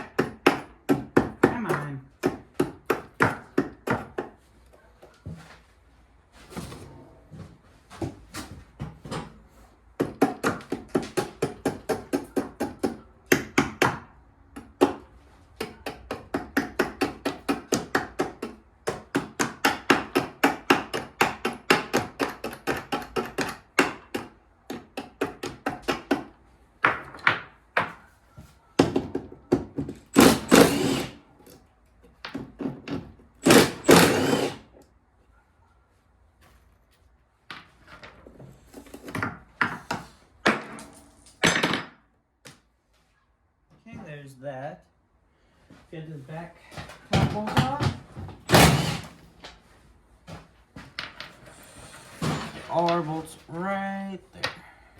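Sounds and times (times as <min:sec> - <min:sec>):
cordless impact driver bursts: 0:30.1 - 0:31.2, 0:33.4 - 0:34.7, 0:48.5 - 0:49.2.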